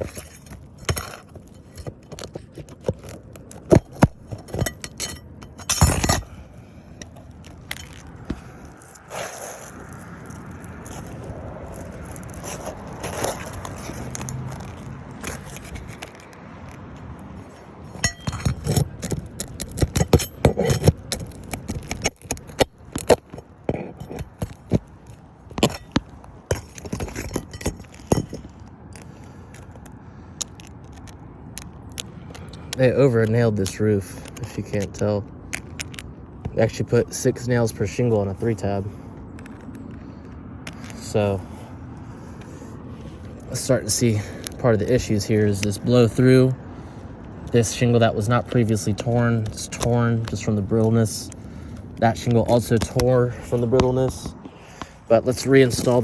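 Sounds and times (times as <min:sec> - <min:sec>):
nails pried out of shingles: 0:00.0 - 0:11.0, 0:17.9 - 0:36.7.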